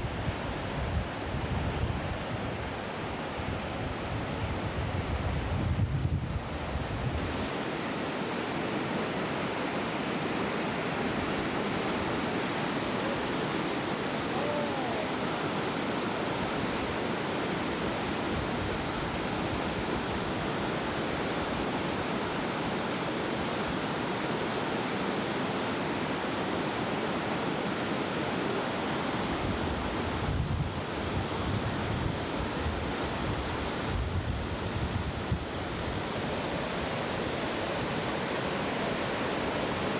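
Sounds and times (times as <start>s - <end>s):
waterfall and rapids roaring: 0.0s - 39.9s
wind buffeting microphone: 3.4s - 7.6s, 29.3s - 36.7s.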